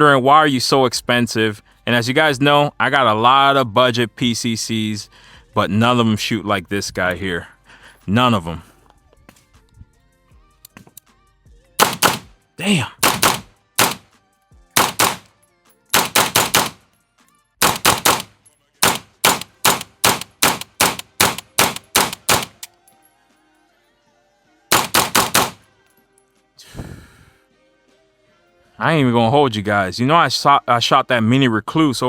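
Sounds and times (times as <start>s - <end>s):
carbine gunshots: 11.8s - 12.3s, 13.0s - 14.0s, 14.8s - 15.3s, 16.0s - 16.8s, 17.6s - 22.7s, 24.7s - 25.6s.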